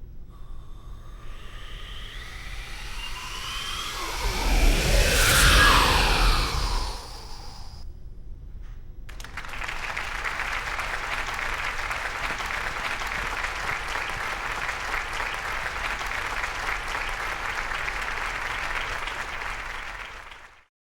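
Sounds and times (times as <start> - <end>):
crowd applauding: 9.1 - 20.6.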